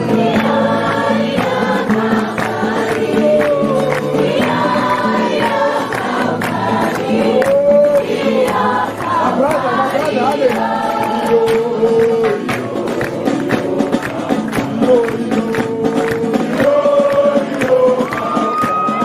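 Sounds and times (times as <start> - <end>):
group singing a worship song: 0.0 - 19.0
steady percussive beat: 0.0 - 19.0.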